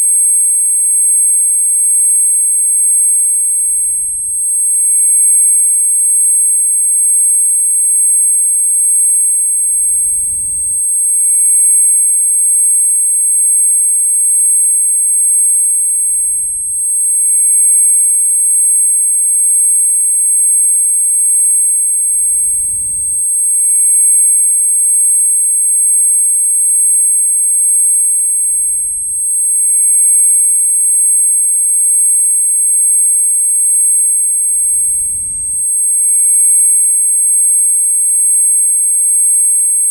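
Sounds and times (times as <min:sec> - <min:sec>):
high-pitched ringing tones: 0:00.0 - 0:39.9.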